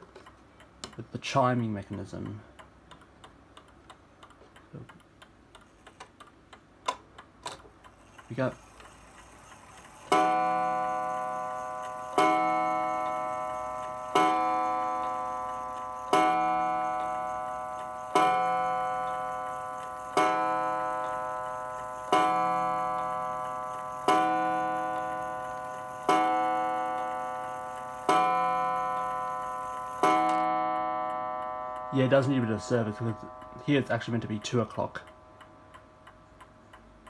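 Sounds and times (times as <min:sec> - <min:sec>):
clock striking gong rod: 0:09.6 - 0:35.9.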